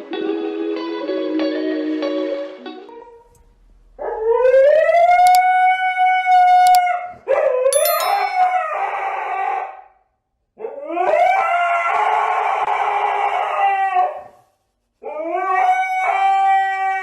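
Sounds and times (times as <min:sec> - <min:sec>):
dog howling: 0:11.1 - 0:14.3, 0:15.3 - 0:17.0.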